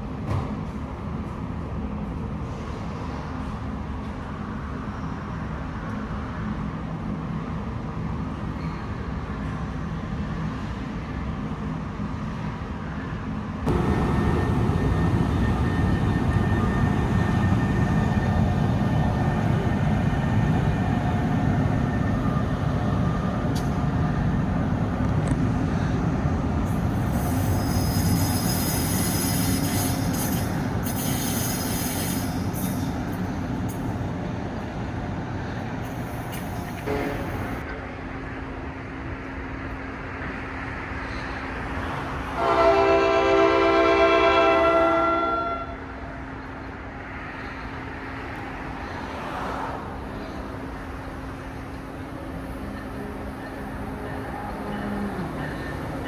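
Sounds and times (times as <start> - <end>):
train rumbling: 0.0 - 56.0
high wheel squeal: 26.9 - 33.3.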